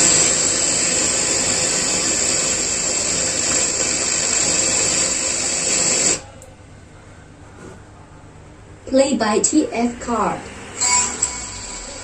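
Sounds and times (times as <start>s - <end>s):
radio static hiss: 0.0s - 6.3s.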